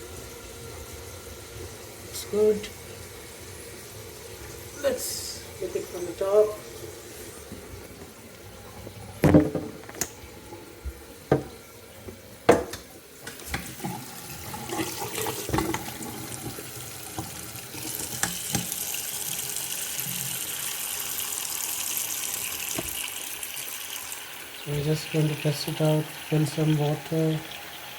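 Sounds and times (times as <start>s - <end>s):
tap water running into sink: 7.5s - 27.9s.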